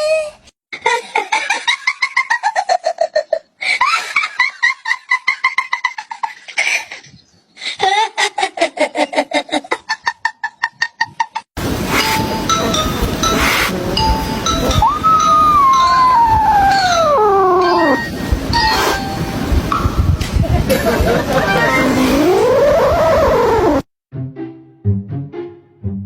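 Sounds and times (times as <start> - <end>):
high-pitched laugh-like calls: 14.8 - 18.2.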